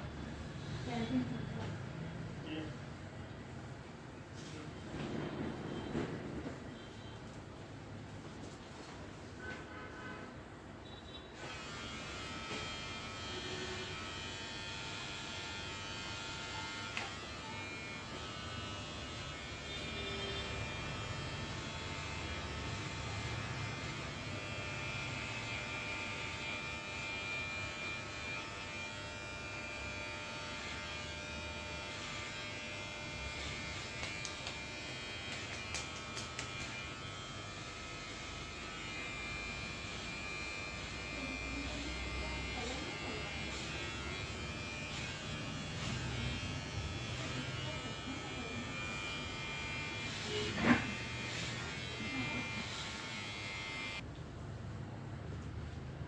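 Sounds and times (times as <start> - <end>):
small electric motor buzzing: 11.4 - 54.0.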